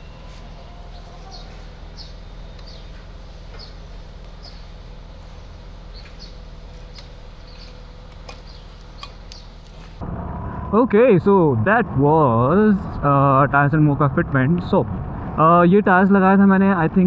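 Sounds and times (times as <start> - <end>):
faint clicks: 0.0 - 10.0
small animal chirping: 0.0 - 10.0
steady low hum: 0.0 - 10.1.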